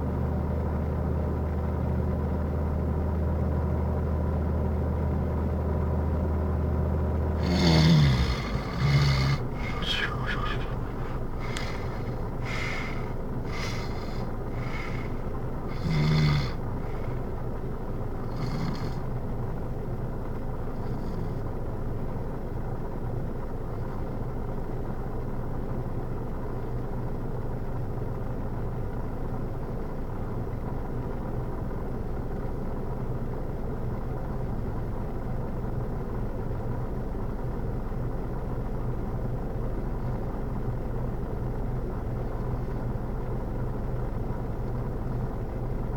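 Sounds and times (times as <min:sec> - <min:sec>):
low hum: 0:04.2 - 0:24.0
man snoring: 0:07.4 - 0:17.2, 0:18.2 - 0:19.1, 0:20.7 - 0:21.4.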